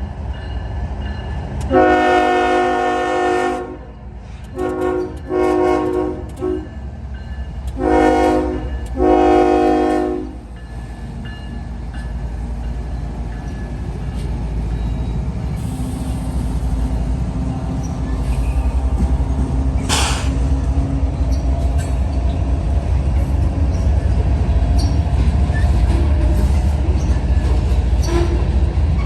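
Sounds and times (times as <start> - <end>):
locomotive rumble: 0.0 - 29.0
train rolling: 0.0 - 29.0
locomotive air horn blasts: 1.7 - 3.9, 4.5 - 6.7, 7.8 - 10.4.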